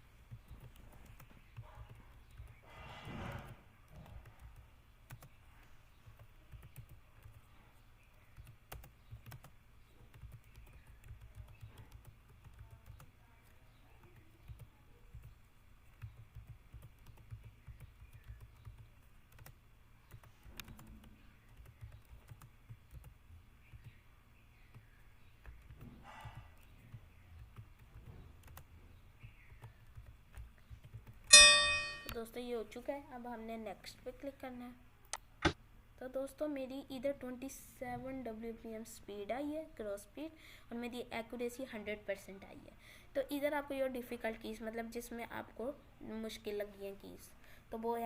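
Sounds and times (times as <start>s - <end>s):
computer keyboard typing: 0.3s - 2.6s, 3.4s - 7.5s, 8.2s - 24.0s, 24.7s - 32.2s.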